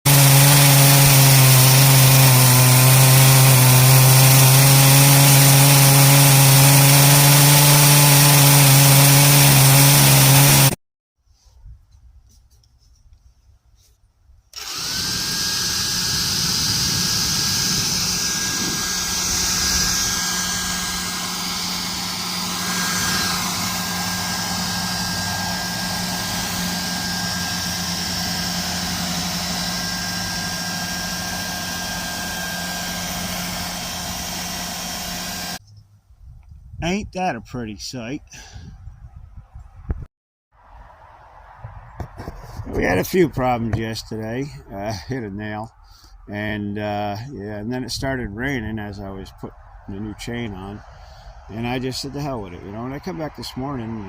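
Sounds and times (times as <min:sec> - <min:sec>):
chainsaw cutting a log: 0:00.0 - 0:10.8, 0:14.6 - 0:35.6
engine running with high whine: 0:14.6 - 0:35.6.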